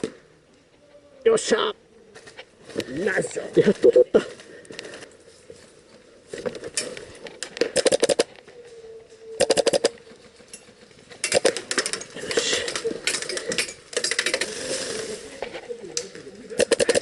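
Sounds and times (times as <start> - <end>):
airsoft guns firing bursts: 7.7 - 8.3, 9.4 - 9.9, 16.6 - 17.0.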